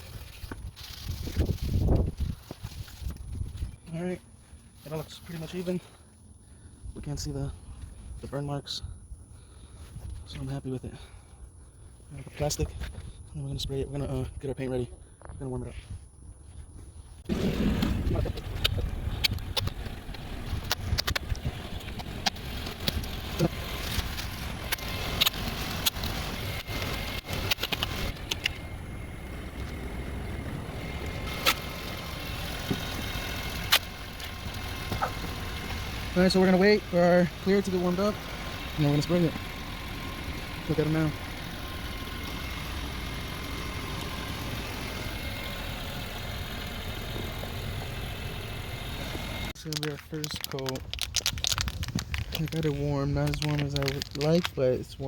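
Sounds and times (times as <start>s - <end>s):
wind buffeting microphone: 0.4s - 3.8s, 15.4s - 25.3s, 50.8s - 53.4s
car engine idling: 17.2s - 49.6s.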